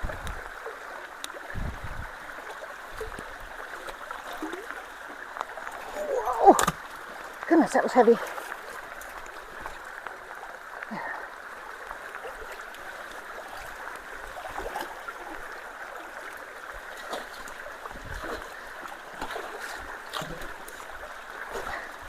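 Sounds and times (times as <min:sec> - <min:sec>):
water rushing through culvert: 0:00.0 - 0:22.0
splashes and knocks: 0:02.9 - 0:10.1, 0:16.9 - 0:22.0.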